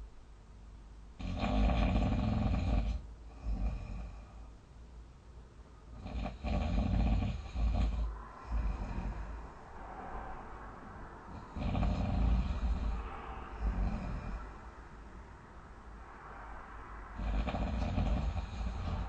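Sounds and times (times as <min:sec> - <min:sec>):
quiet breaths: 0:00.0 - 0:19.0
loud rattling snores: 0:01.2 - 0:04.3, 0:06.0 - 0:09.3, 0:11.4 - 0:13.0, 0:17.2 - 0:19.0.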